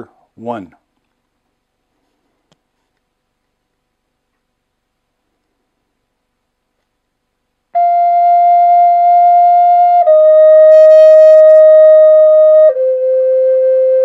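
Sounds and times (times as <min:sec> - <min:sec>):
flute playing held notes: 0:07.8 - 0:14.0.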